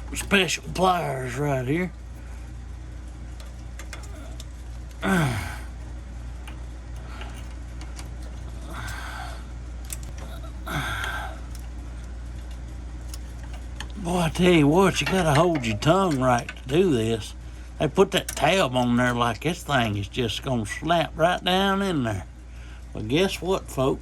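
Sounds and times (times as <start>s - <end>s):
steady low hum: 0.0s - 24.0s
man grunting with effort: 5.0s - 5.8s, 10.2s - 11.5s
metal and plastic clicks: 9.8s - 10.3s.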